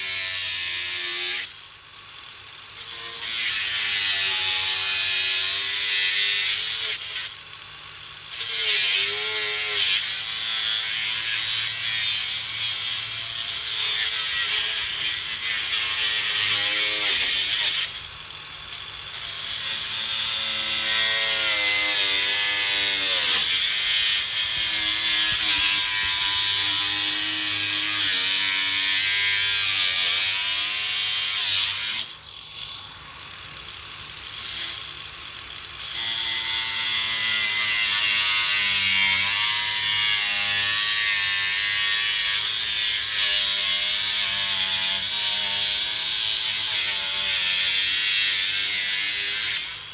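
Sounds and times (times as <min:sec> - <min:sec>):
electric power tool running: 0:21.5 - 0:28.9.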